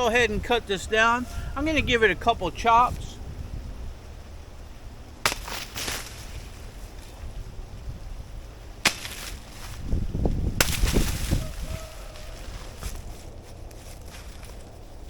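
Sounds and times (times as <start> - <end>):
wind rumble on microphone: 0.0 - 5.3, 6.0 - 15.0
blade chopping plant stem: 5.2 - 6.3, 8.8 - 9.4, 10.6 - 11.4.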